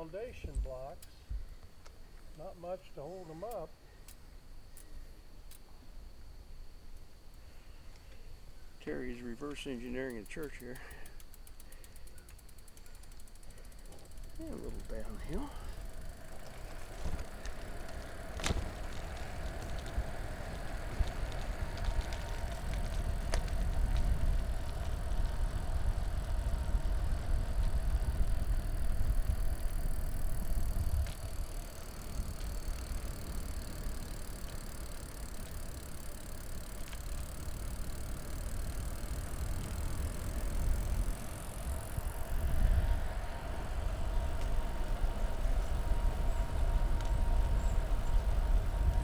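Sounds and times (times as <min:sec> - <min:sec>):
faint steady hum: 0:00.0 - 0:49.0
sharp clicks: 0:09.4 - 0:14.8
tyre noise: 0:13.1 - 0:49.0
wind rumble on microphone: 0:16.7 - 0:31.5, 0:39.4 - 0:49.0.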